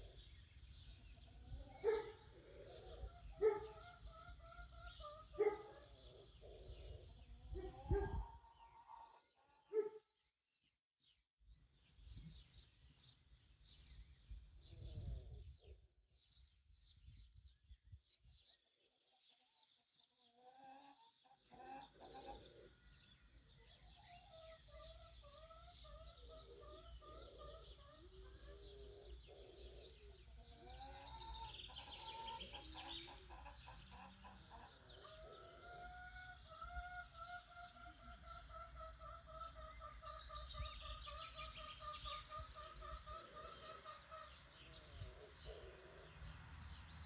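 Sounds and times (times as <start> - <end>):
chickens clucking: 0.0 - 9.6, 20.2 - 46.3
songbirds chirping: 0.0 - 47.0.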